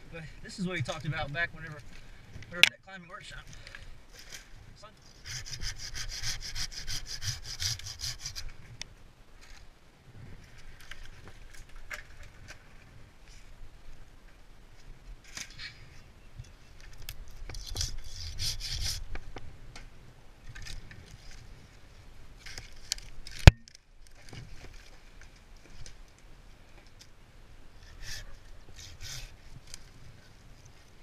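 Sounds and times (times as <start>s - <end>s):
scraping and rubbing: 4.1s - 8.6s, 17.3s - 19.2s, 27.8s - 30.0s.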